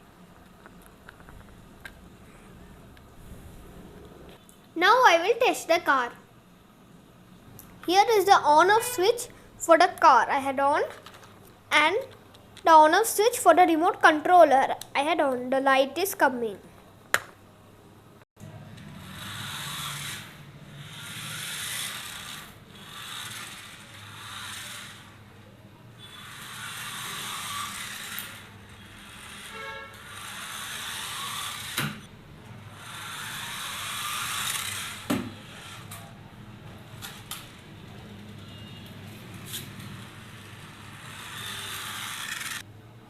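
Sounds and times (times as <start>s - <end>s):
toy car motor whirring: 18.8s - 25.2s, 26.0s - 36.2s, 39.3s - 42.7s.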